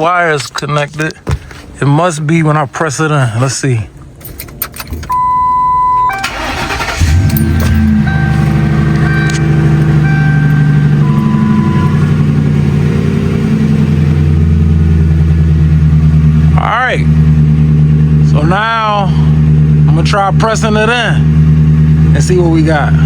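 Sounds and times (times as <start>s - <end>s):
car engine starting and idling: 3.9s - 23.0s
electronic tone: 7.0s - 12.8s.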